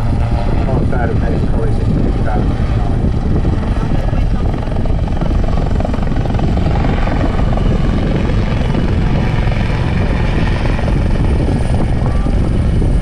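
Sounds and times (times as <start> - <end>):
helicopter rotor and engine rumble: 0.0 - 13.0.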